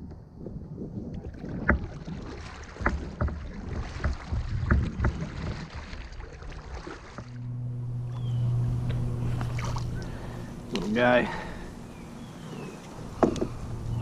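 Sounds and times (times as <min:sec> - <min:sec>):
steady low hum: 0:06.5 - 0:14.0
knocks on a kayak: 0:13.2 - 0:13.5.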